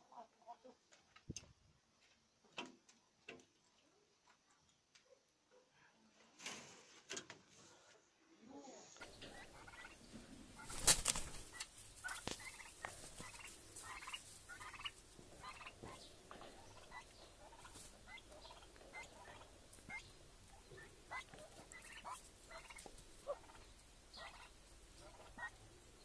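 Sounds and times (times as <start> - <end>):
poultry calling: 9.0 - 26.0.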